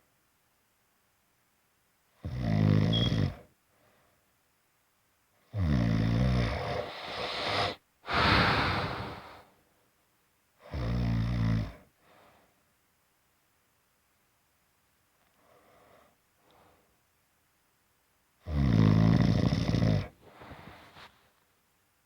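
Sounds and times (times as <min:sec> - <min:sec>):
low buzzing snores: 0:02.2 - 0:03.5, 0:05.5 - 0:09.4, 0:10.6 - 0:11.9, 0:18.5 - 0:20.2
breathy exhale: 0:06.8 - 0:09.6.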